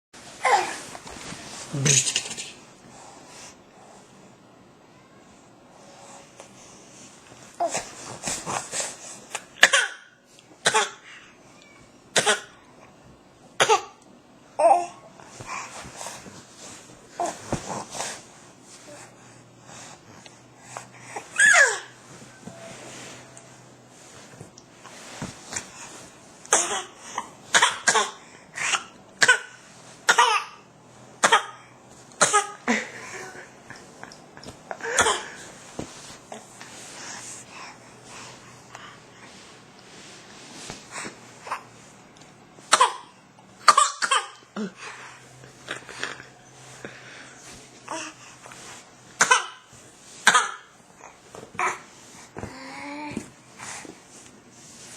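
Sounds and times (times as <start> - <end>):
baby coughing: 9.6 - 11.1, 12.1 - 12.6, 13.6 - 14.0, 26.5 - 31.6, 32.2 - 32.7, 34.8 - 35.4, 42.7 - 44.8, 49.2 - 50.8.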